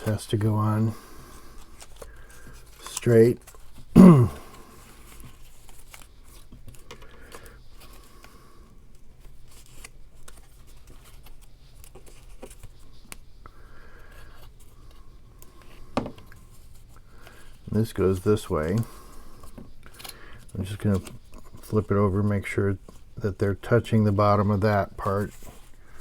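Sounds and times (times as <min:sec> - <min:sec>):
paper rustling: 0:00.0 - 0:03.9, 0:04.7 - 0:08.2, 0:09.0 - 0:15.8.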